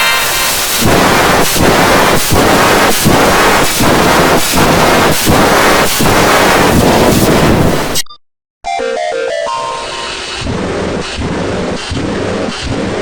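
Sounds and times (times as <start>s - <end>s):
distorted pulsing noise: 0.0s - 8.0s, 9.7s - 13.0s.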